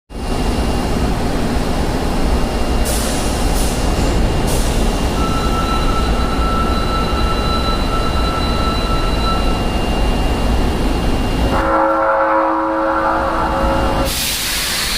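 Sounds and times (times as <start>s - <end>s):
subway train rumble: 0.1s - 14.9s
strong whine: 5.1s - 14.9s
thin high whine: 5.2s - 10.1s.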